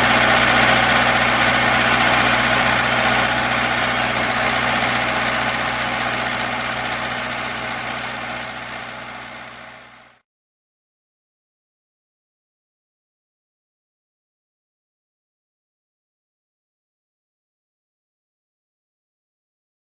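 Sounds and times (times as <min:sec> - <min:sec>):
diesel generator running: 0:00.0 - 0:10.2.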